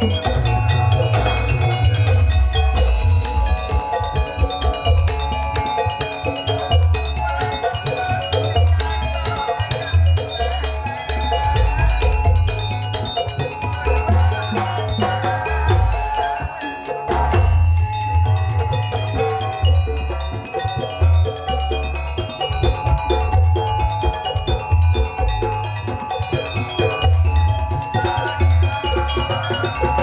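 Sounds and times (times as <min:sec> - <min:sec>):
deep drum beat: 0:00.0 - 0:09.4, 0:10.0 - 0:18.8
mallet percussion melody: 0:00.0 - 0:30.0.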